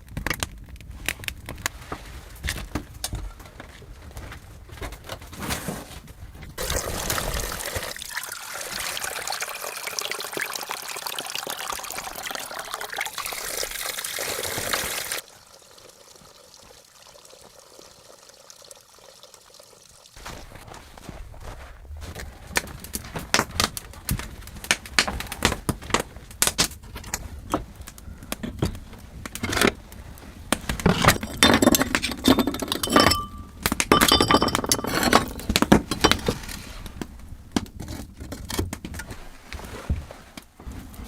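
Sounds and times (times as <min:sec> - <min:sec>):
ringing metal or glass clinks: 0:32.8 - 0:35.0.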